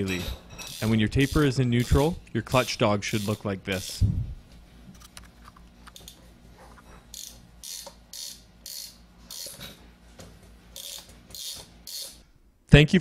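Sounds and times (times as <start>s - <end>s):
mechanism ratcheting clicks: 0.2s - 4.0s, 7.1s - 9.8s, 10.8s - 12.2s.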